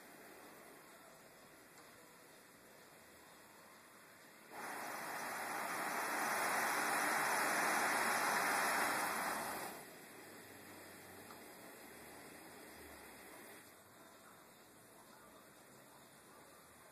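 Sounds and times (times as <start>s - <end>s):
stove burner roaring: 4.4s - 13.7s.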